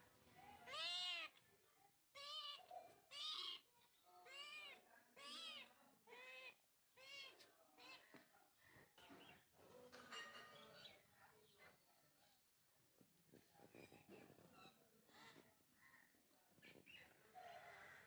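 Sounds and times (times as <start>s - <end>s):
cat meowing: 0.6s - 1.3s, 2.2s - 8.0s.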